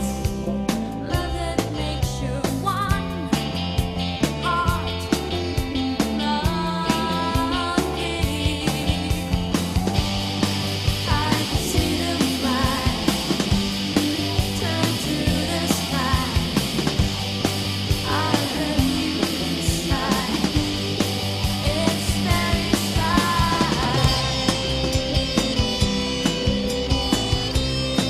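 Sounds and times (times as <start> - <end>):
electric guitars: 0.0 - 28.0
person singing: 4.3 - 9.6, 11.0 - 17.0, 18.0 - 26.0.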